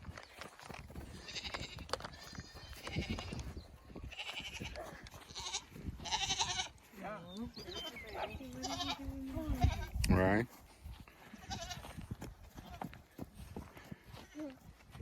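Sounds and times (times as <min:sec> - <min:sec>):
goats bleating: 0:01.1 - 0:06.9, 0:07.6 - 0:10.1, 0:11.2 - 0:12.0.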